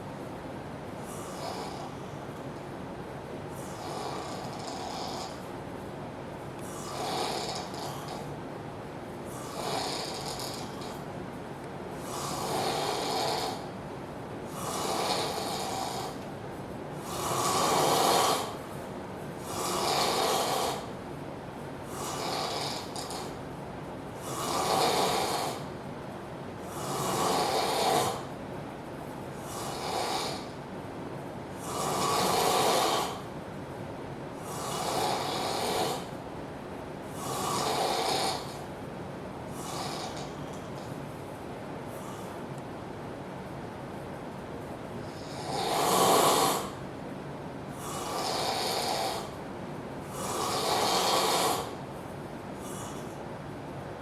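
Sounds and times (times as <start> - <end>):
man snoring loudly: 3.6 - 5.4, 6.8 - 8.2, 9.4 - 10.9, 12.0 - 13.6, 14.6 - 16.2, 17.0 - 18.6, 19.4 - 20.9, 21.9 - 23.3, 24.2 - 25.6, 26.7 - 28.2, 29.5 - 30.5, 31.6 - 33.2, 34.4 - 36.1, 37.2 - 38.6, 39.6 - 40.3, 45.1 - 46.8, 47.8 - 49.3, 50.1 - 51.8.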